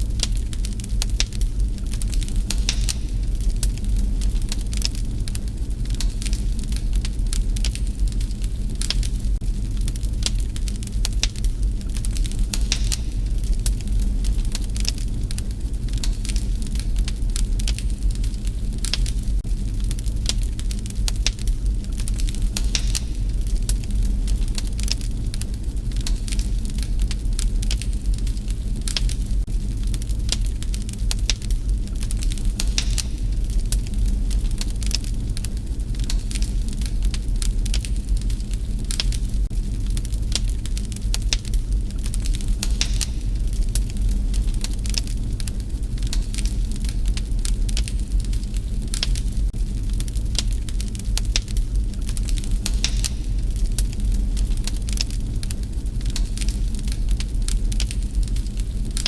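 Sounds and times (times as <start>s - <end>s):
low fire rumble: 0.0s - 59.0s
wood fire crackling and popping: 0.0s - 59.0s.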